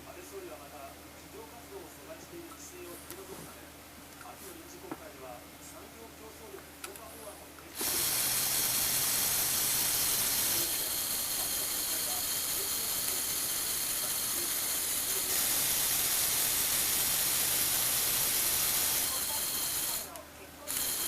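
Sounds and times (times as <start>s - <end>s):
small motor whirring plastic gears: 7.8s - 21.0s.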